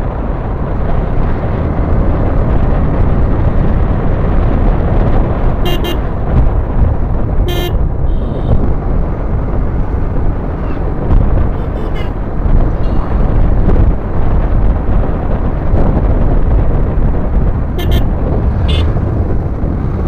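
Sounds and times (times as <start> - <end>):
motorcycle engine rumble: 0.0 - 20.0
wind rush: 0.0 - 20.0
vehicle horn beeps: 5.6 - 6.1, 7.4 - 8.6, 17.8 - 18.1, 18.7 - 18.9.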